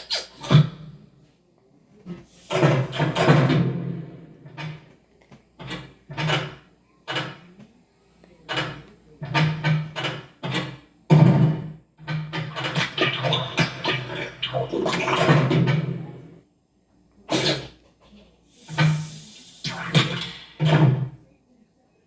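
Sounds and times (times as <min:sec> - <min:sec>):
cartoon doors banging shut: 0:02.5 - 0:04.8, 0:19.7 - 0:21.2.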